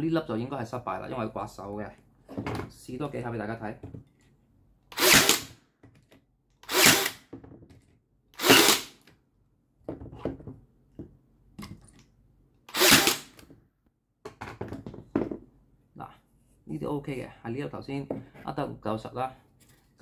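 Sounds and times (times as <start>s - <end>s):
nail gun firing into wood: 5.0s - 5.6s, 6.6s - 7.3s, 8.4s - 9.0s, 12.7s - 13.4s.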